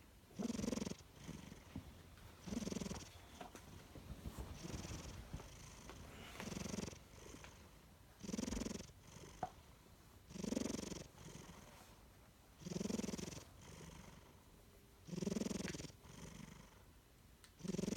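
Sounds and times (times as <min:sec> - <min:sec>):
cat snoring: 0:00.4 - 0:01.7, 0:02.4 - 0:03.2, 0:04.6 - 0:07.6, 0:08.2 - 0:09.5, 0:10.3 - 0:11.7, 0:12.6 - 0:14.4, 0:15.0 - 0:16.8, 0:17.6 - 0:17.9
faint breaths: 0:01.0 - 0:07.7.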